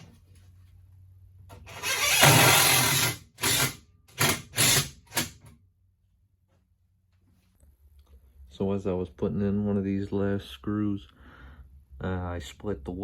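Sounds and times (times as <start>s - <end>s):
power drill driving screw: 1.6s - 5.4s.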